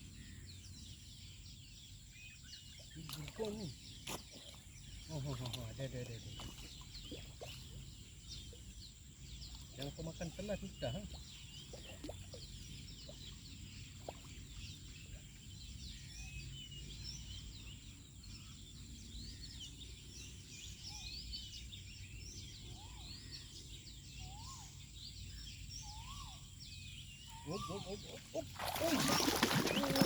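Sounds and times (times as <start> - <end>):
small birds chirping: 0.0 - 30.0
whistled bird notes: 24.1 - 30.0.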